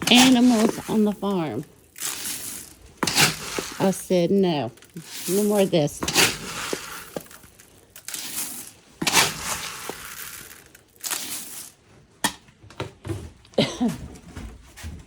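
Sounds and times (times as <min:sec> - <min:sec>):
crunching: 0:00.0 - 0:11.8.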